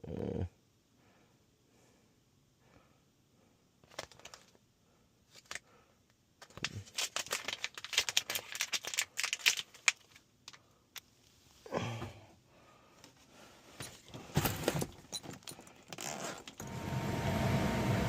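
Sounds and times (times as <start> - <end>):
small hard objects clattering: 6.4 - 10.6.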